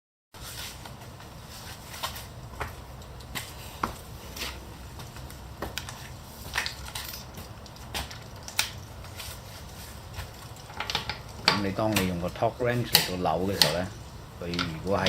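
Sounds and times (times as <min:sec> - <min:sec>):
low steady hum: 0:00.4 - 0:15.0
tools clicking and knocking: 0:10.1 - 0:15.0.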